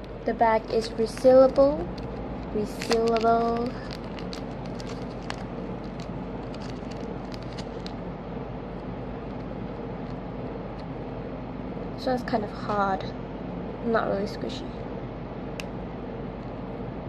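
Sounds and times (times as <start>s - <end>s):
plastic bag crinkling: 0.0s - 8.0s.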